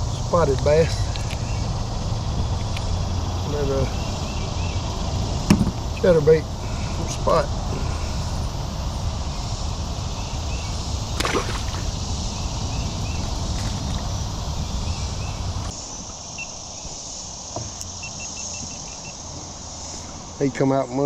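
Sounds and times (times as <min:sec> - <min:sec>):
creek water rushing: 0:00.0 - 0:16.2
high insect buzz: 0:00.0 - 0:21.0.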